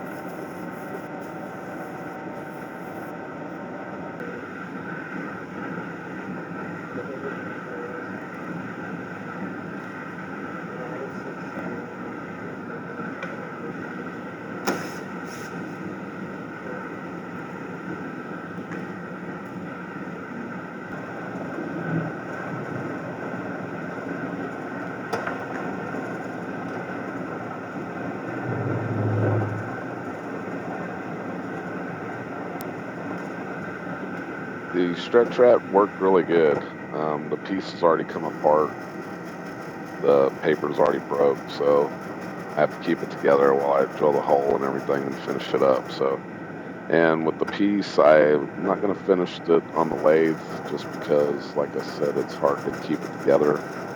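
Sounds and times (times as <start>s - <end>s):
short low hum: 28.2s - 30.4s.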